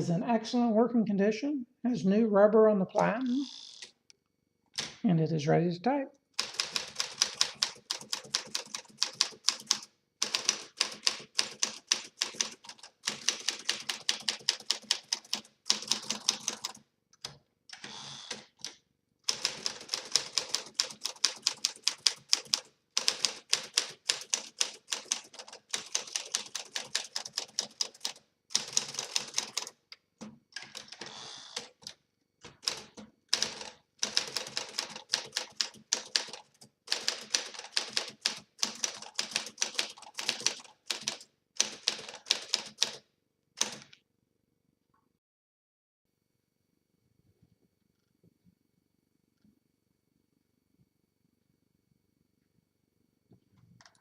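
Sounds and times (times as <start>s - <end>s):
manual typewriter typing: 6.4s - 43.0s, 43.6s - 44.0s.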